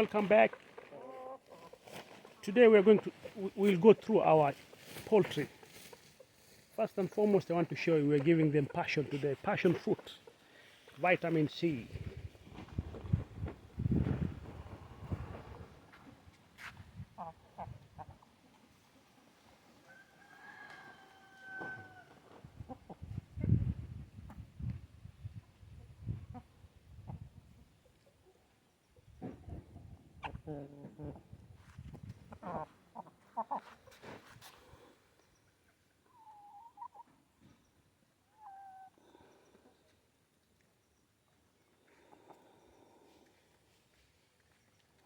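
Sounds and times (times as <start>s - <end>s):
chickens clucking: 0.0s - 13.9s, 17.2s - 19.8s, 26.0s - 34.3s, 35.6s - 39.9s, 41.6s - 43.3s
rooster crowing: 19.9s - 22.1s
chicken long wavering calls: 36.0s - 37.1s, 38.3s - 39.8s.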